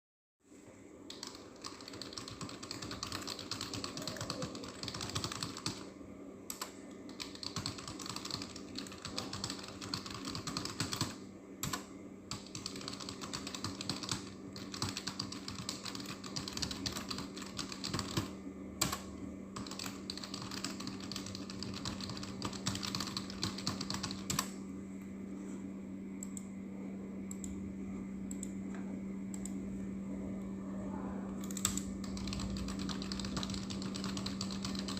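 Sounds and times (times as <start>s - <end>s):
steady low hum: 0.4s - 34.9s
keyboard typing: 1.1s - 5.9s, 6.5s - 24.5s, 31.4s - 34.9s.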